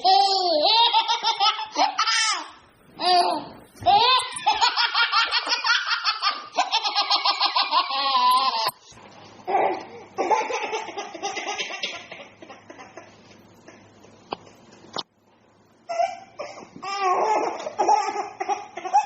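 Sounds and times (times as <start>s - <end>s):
high-pitched laughter: 0.0s - 8.8s.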